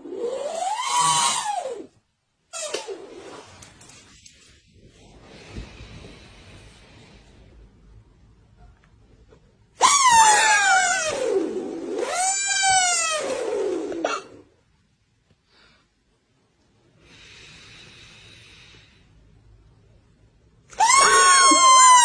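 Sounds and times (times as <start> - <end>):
faint breath hiss: 0.0 - 9.8, 13.5 - 20.7.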